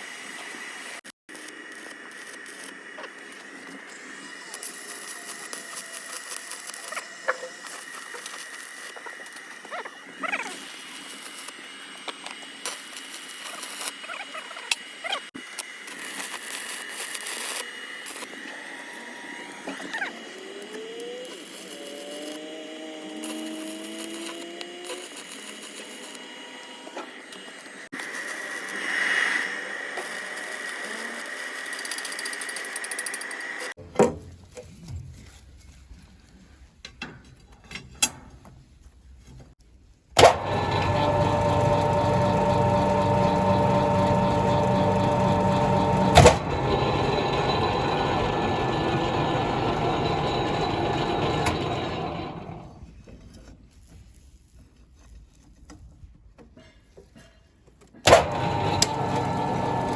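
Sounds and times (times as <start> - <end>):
machine high whine: 40.2 - 52.8, 58.1 - 59.9.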